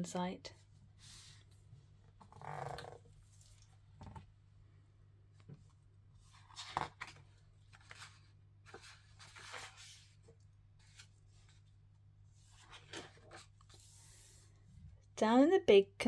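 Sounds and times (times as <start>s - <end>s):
book pages turning: 5.4s - 14.5s.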